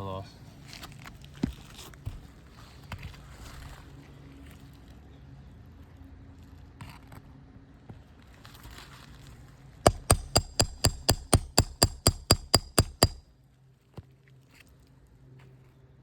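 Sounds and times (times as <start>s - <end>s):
hammer striking metal: 9.9s - 13.2s.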